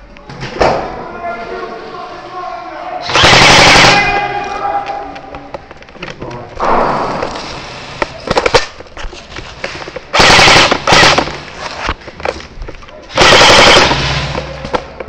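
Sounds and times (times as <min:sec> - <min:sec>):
airsoft guns firing: 0:03.0 - 0:04.4, 0:10.1 - 0:11.5, 0:13.1 - 0:14.9.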